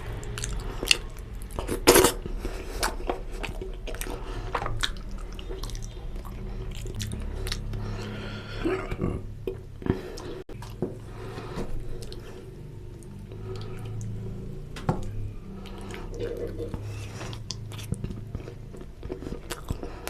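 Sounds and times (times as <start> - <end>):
wet chewing and lip smacks: 2.3 - 8.2, 12.0 - 12.3, 15.0 - 20.0.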